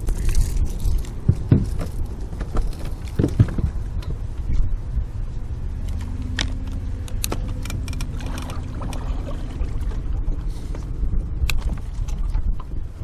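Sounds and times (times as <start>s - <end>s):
steady low rumble: 0.0s - 13.0s
fishing tackle clicking and rattling: 5.8s - 9.0s.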